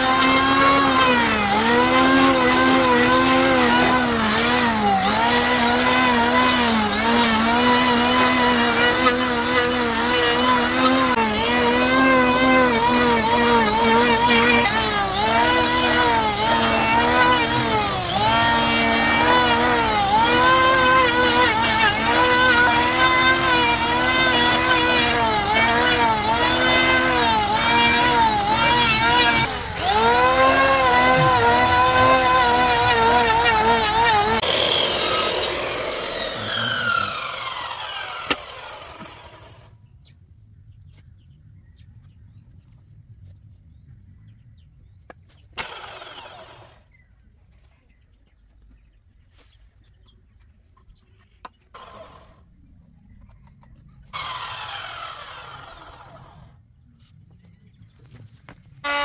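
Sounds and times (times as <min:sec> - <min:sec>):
power tool cutting wood: 0:00.0 - 0:39.7, 0:45.6 - 0:46.8, 0:51.8 - 0:52.4, 0:54.2 - 0:56.6.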